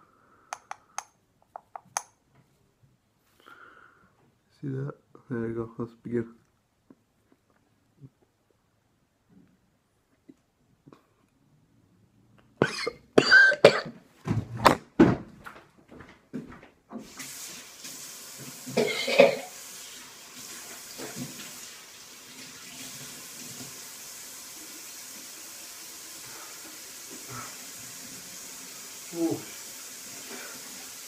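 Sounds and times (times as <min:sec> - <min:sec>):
man coughing and gagging: 0:12.6 - 0:14.0, 0:18.8 - 0:19.5
tap water running: 0:16.9 - 0:31.0.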